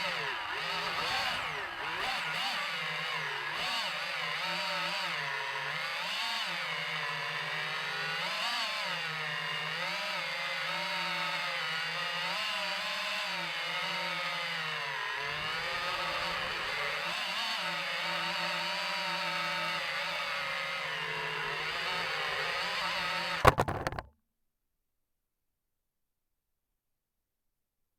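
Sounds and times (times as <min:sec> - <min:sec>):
sharp knock: 0:23.4 - 0:24.1.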